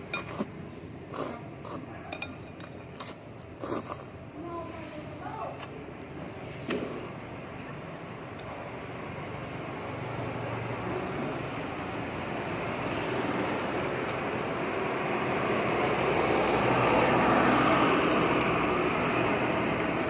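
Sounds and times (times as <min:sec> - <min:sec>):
road traffic rushing: 0:06.2 - 0:20.0.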